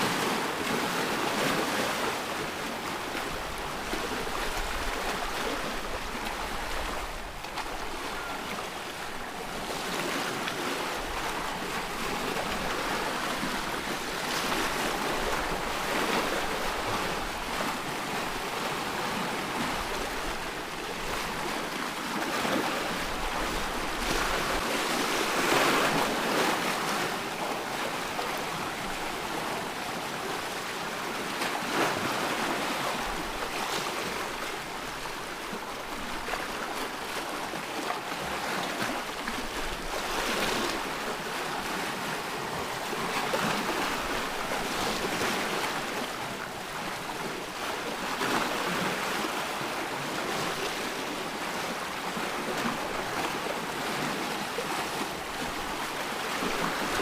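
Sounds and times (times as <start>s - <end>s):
ocean waves washing onto shore: 0.0s - 57.0s.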